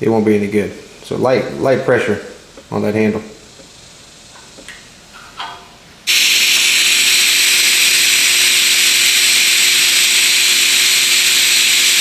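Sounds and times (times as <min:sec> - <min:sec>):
welding arc hissing and humming: 0:06.1 - 0:12.0.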